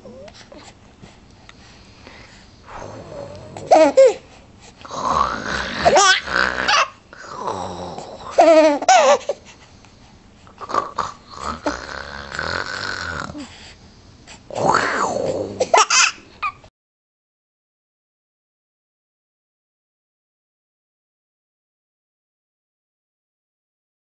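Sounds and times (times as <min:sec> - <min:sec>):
child making mock snoring noises: 0:02.7 - 0:04.0, 0:04.9 - 0:08.4, 0:10.6 - 0:13.5, 0:14.5 - 0:15.7.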